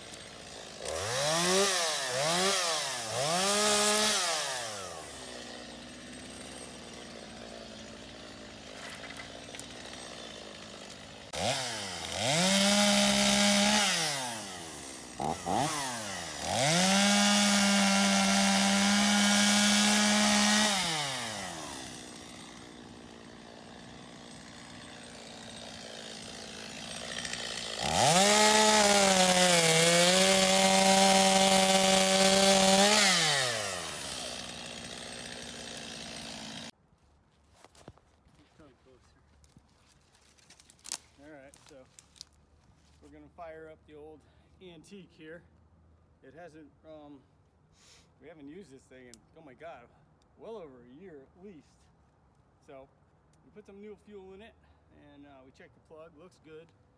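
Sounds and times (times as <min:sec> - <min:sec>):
chainsaw cutting wood: 0:00.0 - 0:36.8
chainsaw idling and revving: 0:00.0 - 0:36.8.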